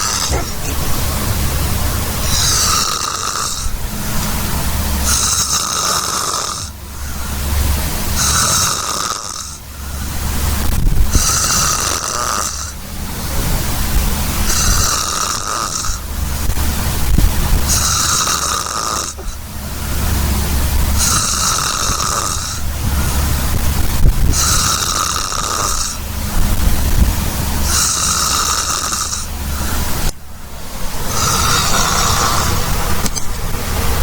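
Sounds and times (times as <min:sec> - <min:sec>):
person snoring: 0:14.5 - 0:16.0, 0:24.3 - 0:26.0, 0:27.6 - 0:29.8, 0:31.1 - 0:32.9.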